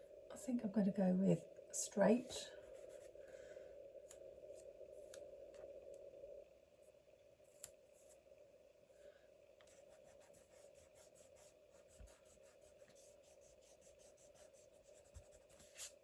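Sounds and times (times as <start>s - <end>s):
steady low hum: 0.0s - 16.0s
scratching strokes on paper: 2.6s - 3.2s, 9.6s - 16.0s.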